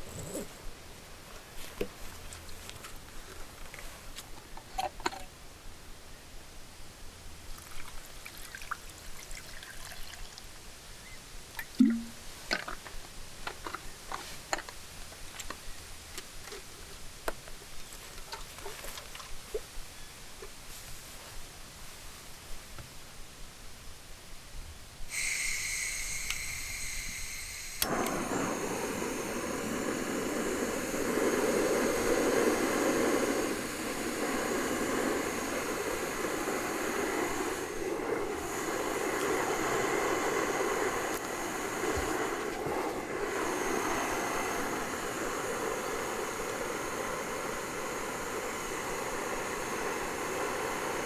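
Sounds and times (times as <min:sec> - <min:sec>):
gas burner roaring: 0:25.1 - 0:51.0
gas hissing from valve: 0:25.1 - 0:51.0.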